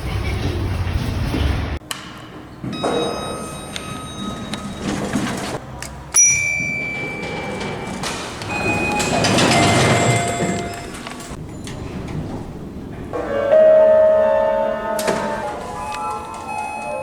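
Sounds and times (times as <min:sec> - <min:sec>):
elevator chime ringing: 0:02.6 - 0:05.6, 0:06.2 - 0:11.8, 0:13.2 - 0:17.0
long high elevator beep: 0:02.7 - 0:05.4, 0:06.2 - 0:11.2, 0:13.2 - 0:17.0
short elevator tones: 0:06.2 - 0:17.0.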